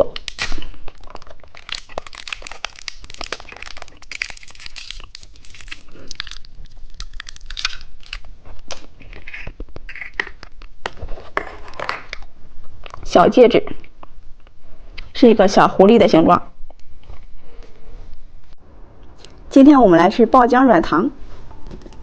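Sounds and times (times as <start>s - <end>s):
plastic wrapper crinkling and tearing: 0.0s - 13.0s.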